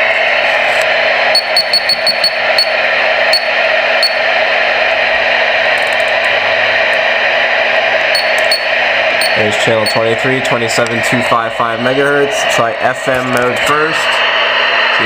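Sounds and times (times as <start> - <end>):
short high beeps: 1.4 - 2.7, 8.2 - 10.0
radio static hiss: 8.2 - 14.2.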